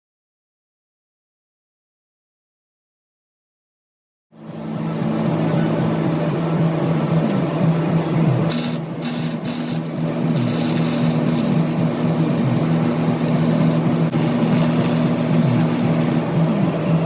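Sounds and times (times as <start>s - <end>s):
mower engine running: 4.4s - 17.0s.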